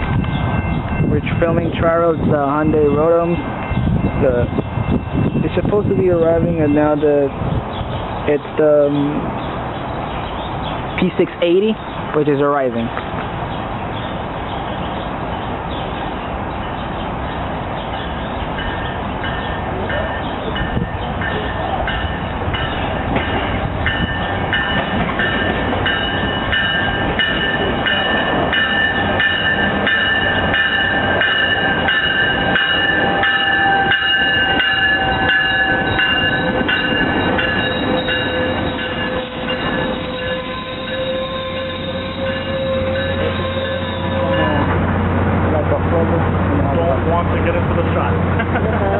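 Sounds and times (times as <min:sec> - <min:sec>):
train rumble with wheel clicks: 0:12.9 - 0:48.9
brakes squealing: 0:23.8 - 0:44.9.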